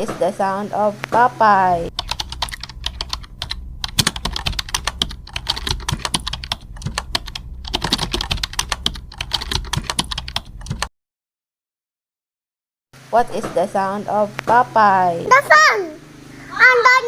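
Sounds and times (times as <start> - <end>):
rapid clicking and tapping: 1.9 - 10.9.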